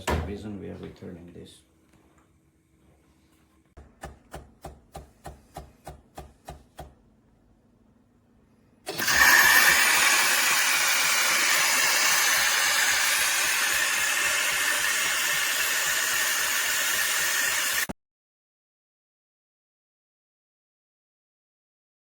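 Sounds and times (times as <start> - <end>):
loud steady hiss: 9.0 - 17.9.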